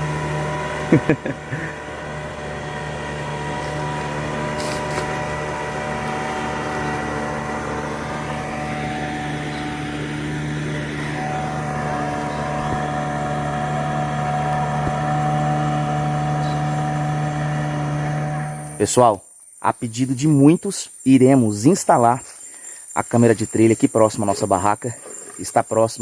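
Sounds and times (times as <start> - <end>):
frogs and insects calling: 3.6 - 13.3, 18.6 - 26.0.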